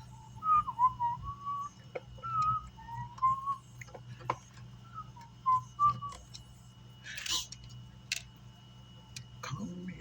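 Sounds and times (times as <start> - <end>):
man whistling a tune: 0.3 - 3.8, 4.8 - 6.3.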